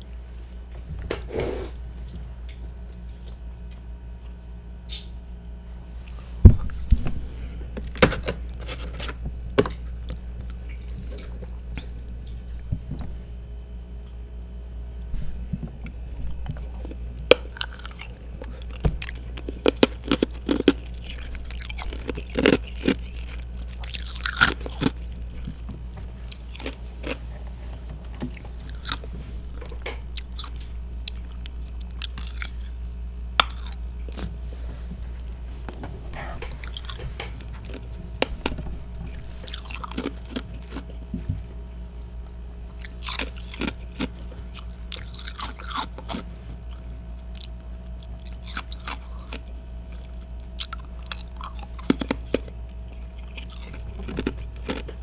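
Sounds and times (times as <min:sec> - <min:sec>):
low hum: 0:00.0 - 0:55.0
person crunching ice: 0:19.1 - 0:25.4, 0:33.4 - 0:34.2.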